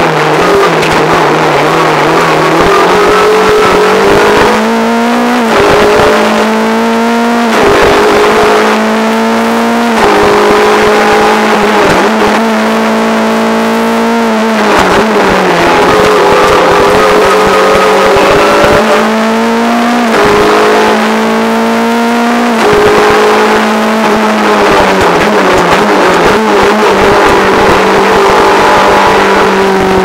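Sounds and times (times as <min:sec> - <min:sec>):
car engine at high revs: 0:00.0 - 0:30.0.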